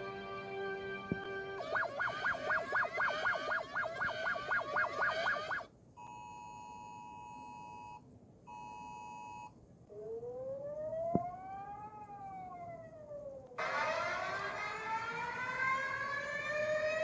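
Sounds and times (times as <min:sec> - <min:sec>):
siren tone rising and falling: 0:01.1 - 0:05.7, 0:09.9 - 0:17.0
fast warbling alarm: 0:01.2 - 0:05.7, 0:13.6 - 0:17.0.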